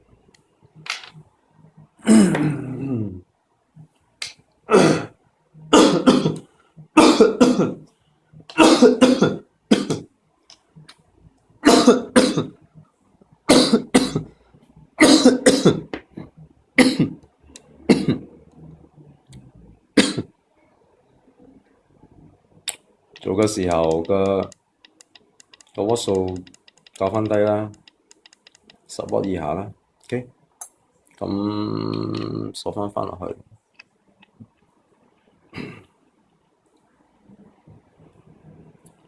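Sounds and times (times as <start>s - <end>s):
person clearing throat: 2.0s - 3.2s, 4.7s - 5.1s, 5.7s - 6.4s, 7.0s - 7.8s, 8.5s - 10.0s, 11.6s - 12.6s, 13.5s - 14.3s, 15.0s - 17.2s, 17.9s - 18.3s, 35.5s - 35.9s
person coughing: 2.0s - 3.2s, 4.7s - 5.1s, 5.7s - 6.4s, 7.0s - 7.8s, 8.5s - 10.0s, 11.6s - 12.5s, 13.5s - 14.3s, 15.0s - 17.2s, 35.6s - 35.9s.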